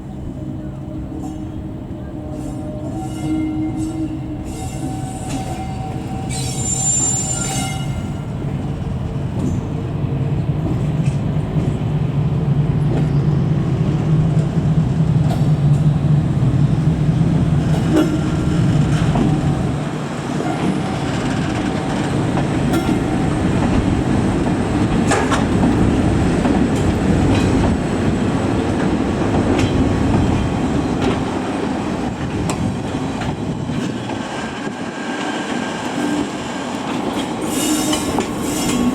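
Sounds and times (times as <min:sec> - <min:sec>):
train wheels rumbling: 0:00.0 - 0:38.9
brief high squeal: 0:04.6 - 0:08.1.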